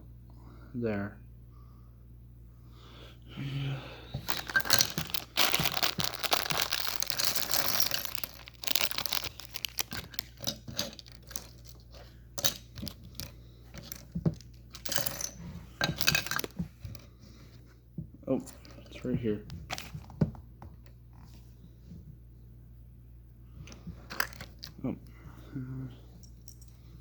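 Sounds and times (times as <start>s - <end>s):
packaging crinkling and rustling: 4.2s - 15.1s, 15.9s - 16.6s.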